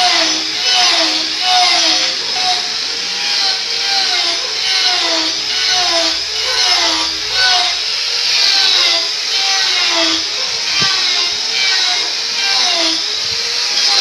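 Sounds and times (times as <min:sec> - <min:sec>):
power saw cutting wood: 0:00.0 - 0:14.0.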